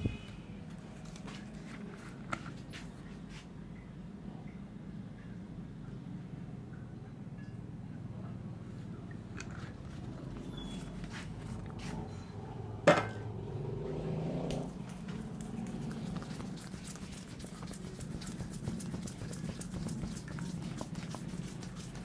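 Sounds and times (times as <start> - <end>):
faint taps and skin sounds: 14.5 - 22.0.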